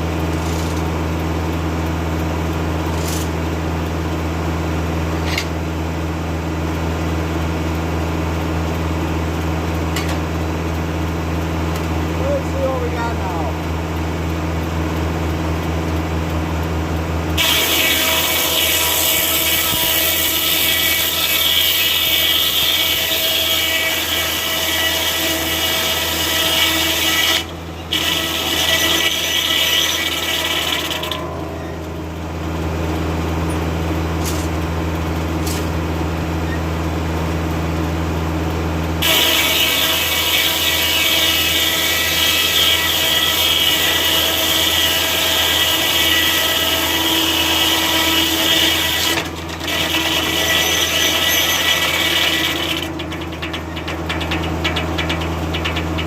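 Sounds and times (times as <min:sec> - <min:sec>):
tractor engine running: 0:00.0 - 0:17.4, 0:30.4 - 0:39.0, 0:52.2 - 0:56.0
circular saw cutting log: 0:17.3 - 0:33.6, 0:39.0 - 0:56.0.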